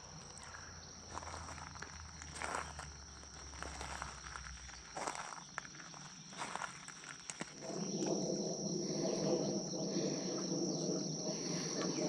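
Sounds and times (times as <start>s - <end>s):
insects trilling: 0.0s - 12.0s
rough low rushing noise: 7.6s - 12.0s.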